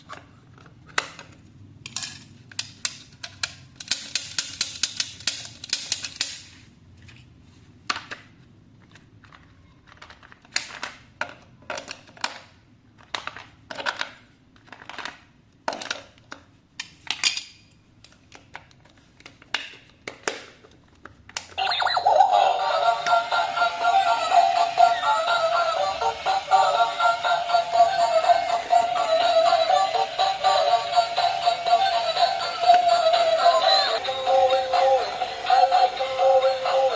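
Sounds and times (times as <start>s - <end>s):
music: 22.2s - 36.9s.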